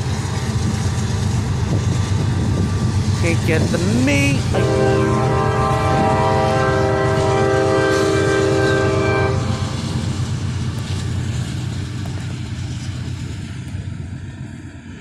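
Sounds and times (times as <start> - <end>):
train rumbling past: 0.0 - 15.0
locomotive air horn: 4.5 - 9.8.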